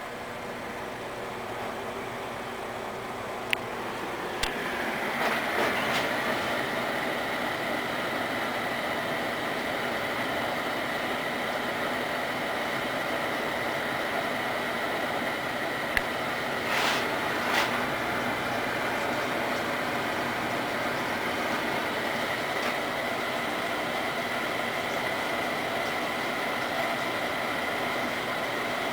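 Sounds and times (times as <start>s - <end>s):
microwave oven humming: 0.0s - 28.9s
click: 15.9s - 16.1s.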